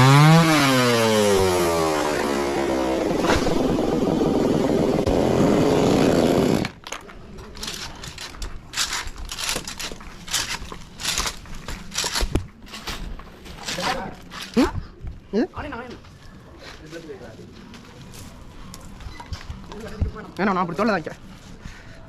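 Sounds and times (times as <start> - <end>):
chainsaw running: 0.0 - 6.8
scraping and rustling: 7.2 - 14.7.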